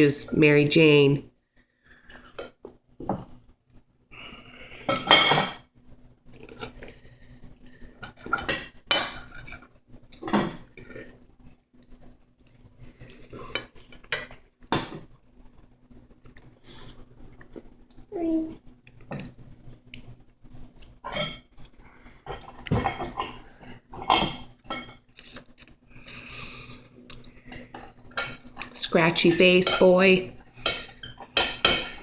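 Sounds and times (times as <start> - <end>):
cutlery clinking on plates: 4.8 - 5.7, 8.0 - 10.7, 21.1 - 21.5, 22.3 - 23.4, 24.0 - 25.0, 30.6 - 32.0.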